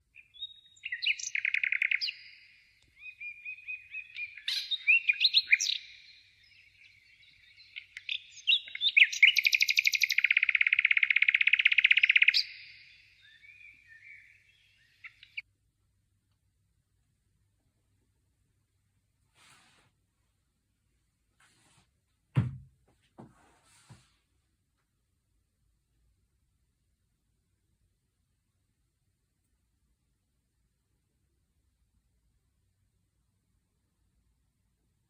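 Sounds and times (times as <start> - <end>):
songbird singing: 0.0 - 15.4.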